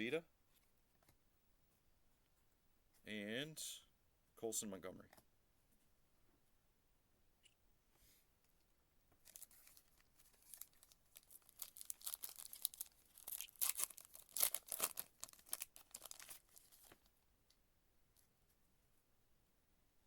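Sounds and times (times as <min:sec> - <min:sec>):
wrapper being torn and crinkled: 0:09.2 - 0:17.0.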